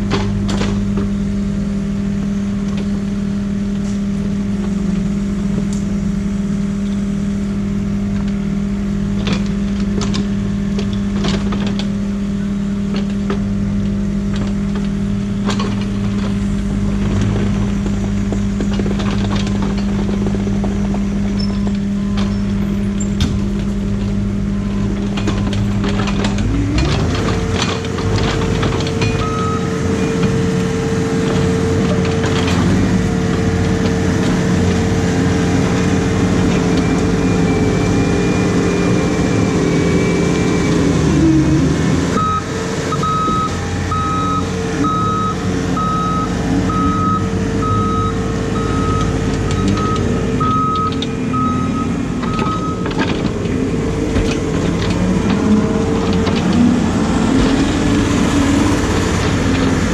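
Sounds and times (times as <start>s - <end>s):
diesel engine running: 0.0s - 59.9s
travel alarm beeping: 29.1s - 30.3s, 42.2s - 52.9s.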